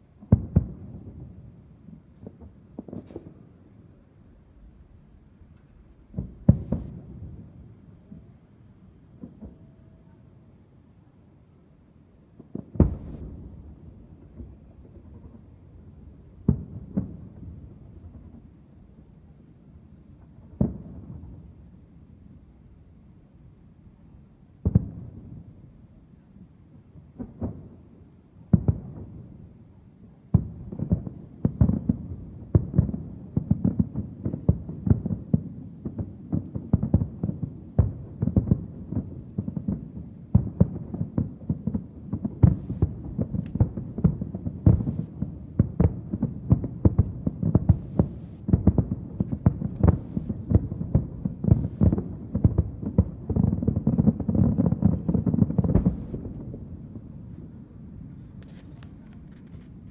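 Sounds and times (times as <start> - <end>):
distant fireworks bursting: 6.1 - 8.3, 12.4 - 15.6, 30.3 - 59.8.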